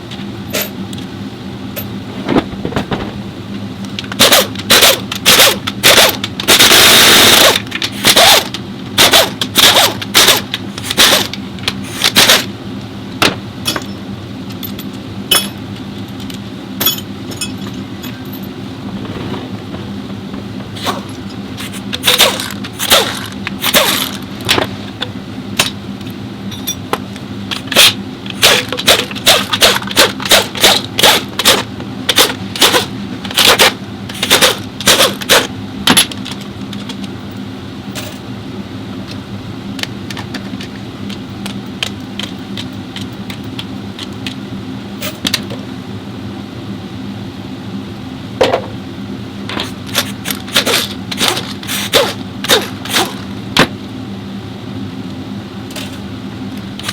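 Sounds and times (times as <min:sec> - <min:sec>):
low mechanical hum: 0:00.0 - 0:56.9
metal tools clinking: 0:14.6 - 0:18.5, 0:26.5 - 0:26.9.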